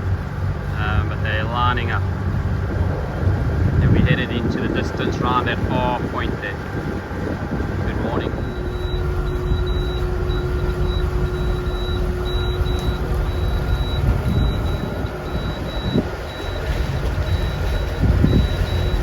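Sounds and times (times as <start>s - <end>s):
low steady hum: 0.0s - 19.0s
wind noise on microphone: 0.0s - 19.0s
electronic alarm beeping: 8.0s - 19.0s.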